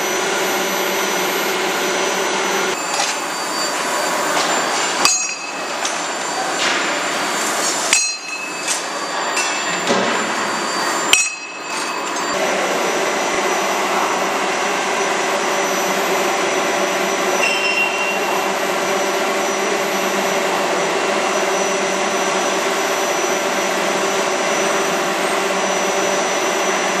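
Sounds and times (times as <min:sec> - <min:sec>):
rushing machine noise: 0:00.0 - 0:17.4.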